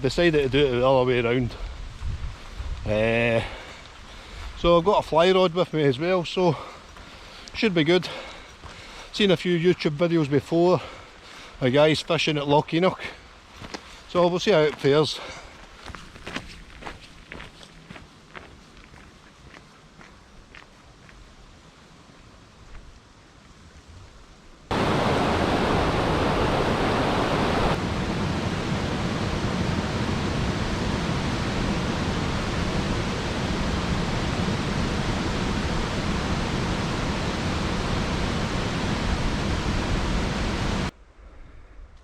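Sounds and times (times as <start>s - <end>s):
loud steady rushing noise: 24.7s - 40.9s.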